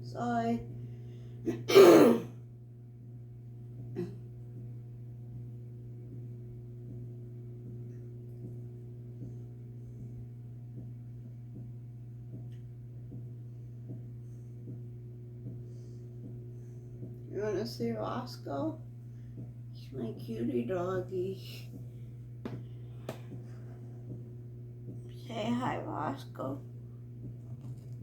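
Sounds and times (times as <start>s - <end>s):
microwave oven humming: 0.0s - 28.0s
person coughing: 1.4s - 2.3s, 4.0s - 4.2s.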